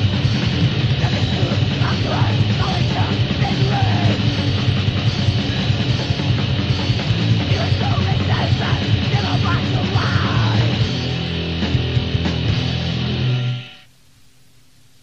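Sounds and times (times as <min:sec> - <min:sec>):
bass: 0:00.0 - 0:13.9
distorted guitars: 0:00.0 - 0:13.9
drums: 0:00.0 - 0:15.0
shouted vocals: 0:01.0 - 0:04.2, 0:07.5 - 0:10.8.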